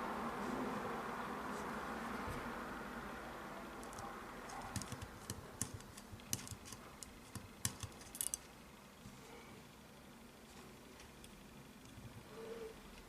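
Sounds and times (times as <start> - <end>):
revolver parts clicking: 3.8 - 8.5.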